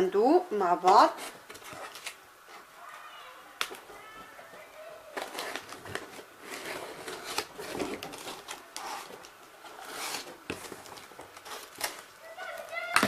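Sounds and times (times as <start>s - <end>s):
cardboard rustling and tearing: 1.2s - 2.2s, 5.1s - 13.0s.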